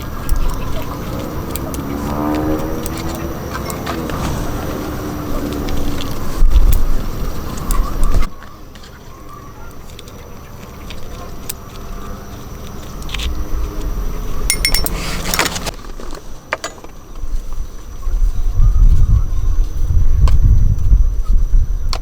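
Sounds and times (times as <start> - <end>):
sharp light clinks: 14.5 - 15.7.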